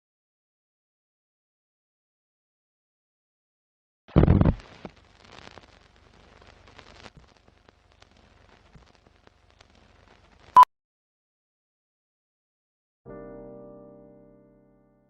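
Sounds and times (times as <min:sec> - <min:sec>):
faint crackling: 0:04.1 - 0:10.6.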